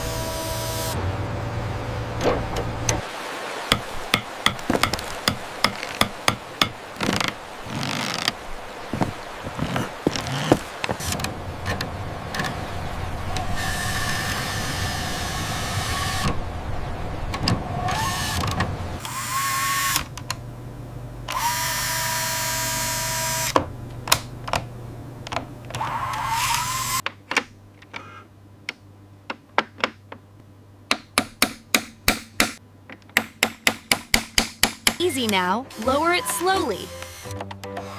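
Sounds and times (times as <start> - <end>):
small electric motor whining: 0.0 - 1.0, 21.4 - 23.6, 25.8 - 27.0
tapping on wood: 3.7 - 7.4.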